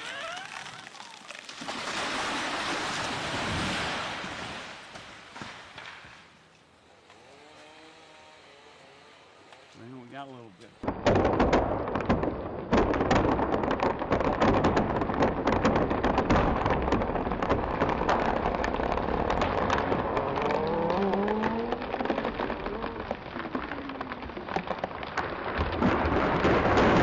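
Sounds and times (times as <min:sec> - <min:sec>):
tree creaking groan: 0:00.0 - 0:01.8, 0:06.8 - 0:10.2, 0:15.4 - 0:27.0
tree crashing: 0:00.0 - 0:06.3, 0:10.8 - 0:27.0
wood crackling and splintering: 0:00.0 - 0:27.0.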